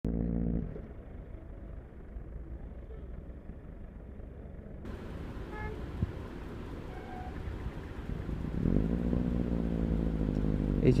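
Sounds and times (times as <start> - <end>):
road traffic rumble: 0.1 - 11.0
vehicle horn tooting: 5.4 - 6.0, 6.8 - 7.4.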